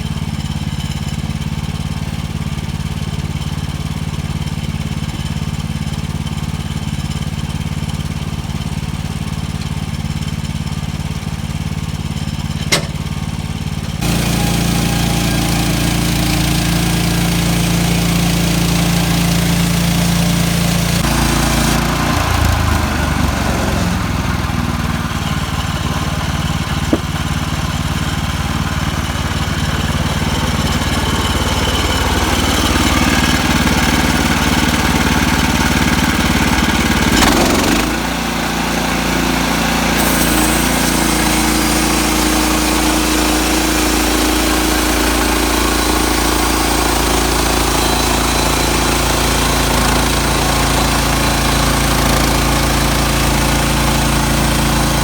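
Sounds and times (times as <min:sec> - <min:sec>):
bandsaw sawmill engine: 0:00.0 - 0:55.0
short knock: 0:26.9 - 0:27.2.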